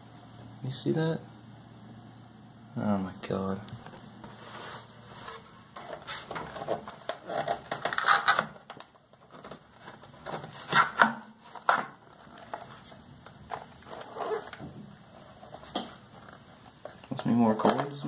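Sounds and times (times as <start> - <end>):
packaging crinkling and clattering: 4.8 - 18.0.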